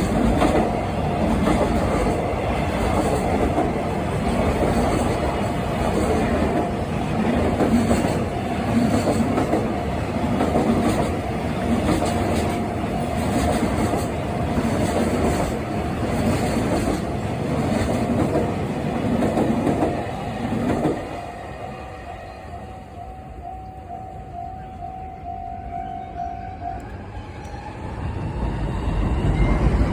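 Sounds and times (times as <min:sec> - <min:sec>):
freight train wheels clattering: 0:00.0 - 0:21.3
steady high tone: 0:21.1 - 0:29.9.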